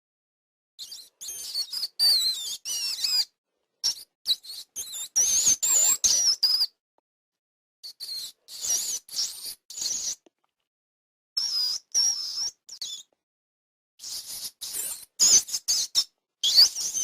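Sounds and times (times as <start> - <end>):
mouse squeaking: 0.8 - 6.8, 7.9 - 10.2, 11.4 - 13.1, 14.0 - 17.0.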